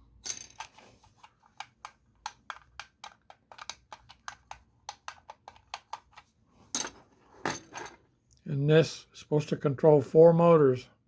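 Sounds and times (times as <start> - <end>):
small plastic clicks: 0.5 - 6.2.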